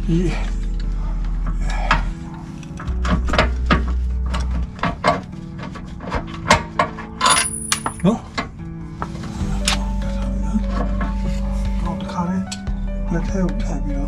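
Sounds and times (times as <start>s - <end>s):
metal tools clinking: 6.5s - 8.2s.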